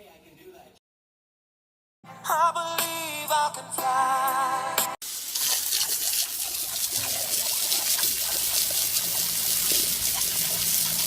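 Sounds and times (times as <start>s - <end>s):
water running: 5.0s - 11.0s.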